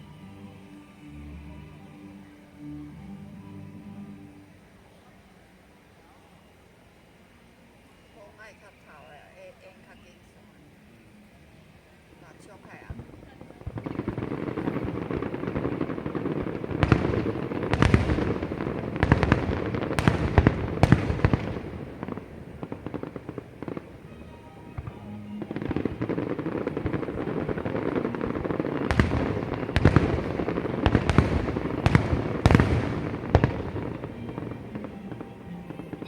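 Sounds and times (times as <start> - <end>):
fireworks crackling: 12.0 - 36.0
firework shells bursting: 13.0 - 36.0.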